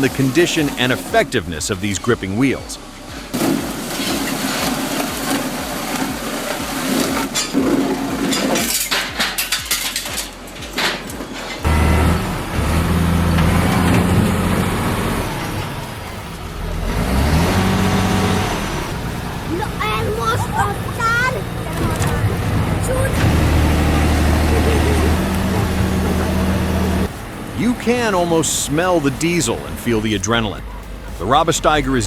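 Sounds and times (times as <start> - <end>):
diesel engine under load: 0.0 - 32.0
logs clattering through rollers: 3.3 - 32.0.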